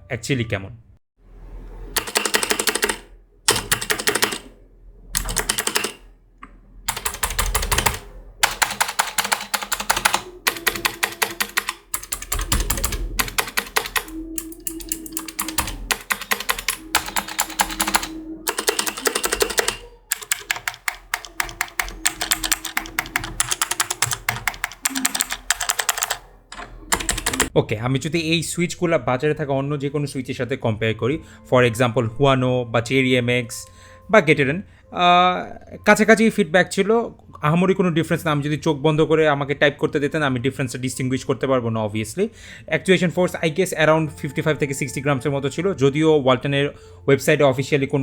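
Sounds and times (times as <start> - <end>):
mechanical keyboard key clicks: 6.9 - 27.5.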